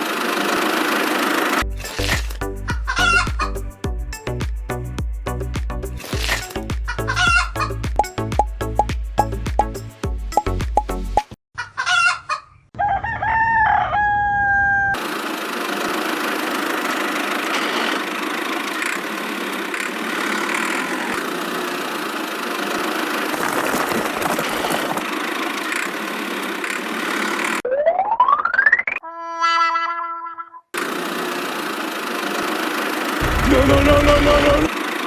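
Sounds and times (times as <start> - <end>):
rooster crowing: 12.8 - 15.0.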